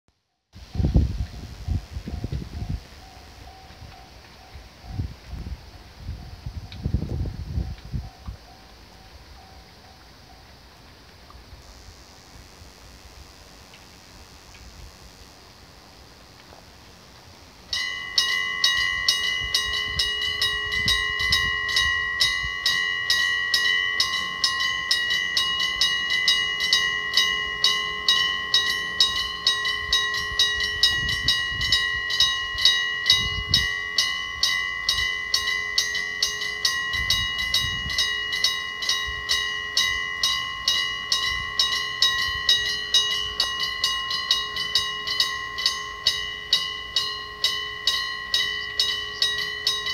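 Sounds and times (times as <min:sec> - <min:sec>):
level crossing bell ringing: 0:17.7 - 0:49.9.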